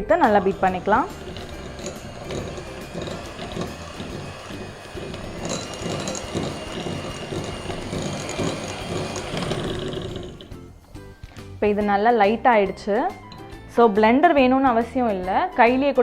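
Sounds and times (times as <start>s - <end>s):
beaters churning and rattling: 0.0s - 10.8s
hand mixer motor whir: 0.0s - 11.0s.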